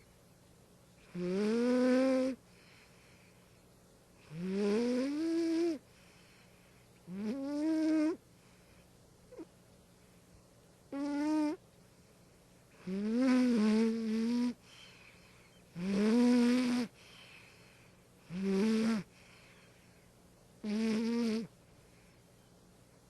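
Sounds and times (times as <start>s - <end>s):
cat snoring: 1.0s - 3.2s, 4.2s - 6.4s, 7.1s - 8.2s, 10.9s - 11.6s, 12.8s - 15.0s, 15.8s - 19.7s, 20.6s - 21.5s.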